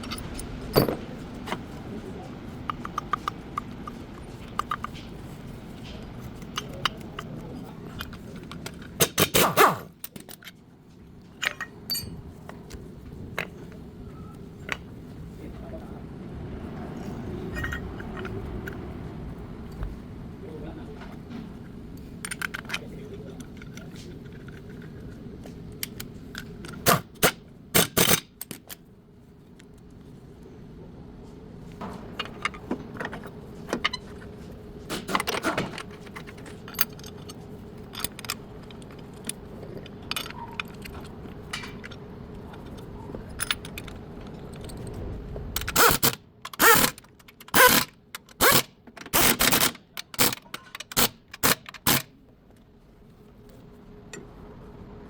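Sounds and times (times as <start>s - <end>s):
metal tools clinking and scraping: 0.0s - 1.6s, 11.3s - 12.5s, 17.0s - 18.4s, 31.8s - 44.9s, 45.6s - 52.0s.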